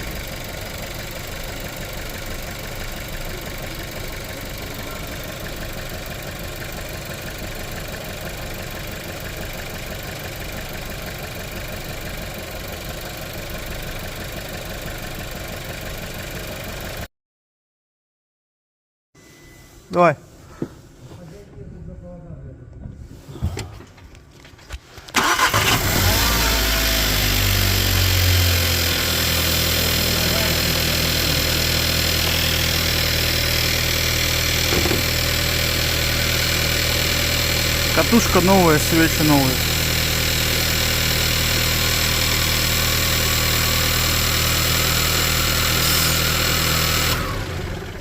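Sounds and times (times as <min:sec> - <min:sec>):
car engine idling: 0:00.0 - 0:17.0, 0:25.2 - 0:48.0.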